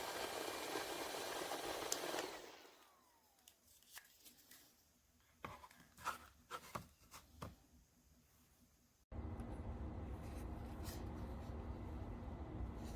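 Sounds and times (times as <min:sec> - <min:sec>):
electric fan running: 0:00.0 - 0:03.0, 0:09.1 - 0:12.9.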